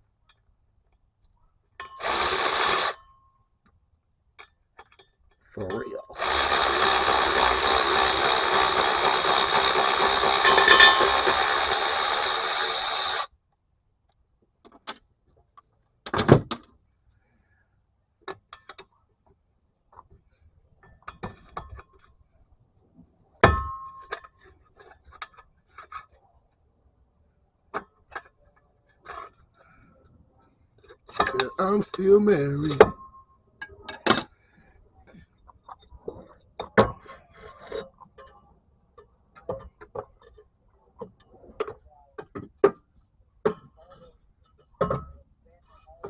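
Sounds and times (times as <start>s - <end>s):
tools clanking on metal: 10.3s - 11.5s
tools clinking on metal: 10.4s - 11.4s.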